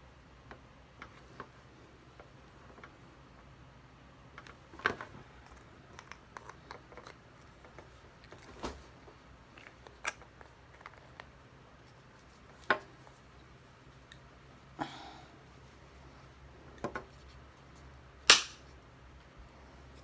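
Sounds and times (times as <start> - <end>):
scissors snipping plastic: 18.3 - 18.6.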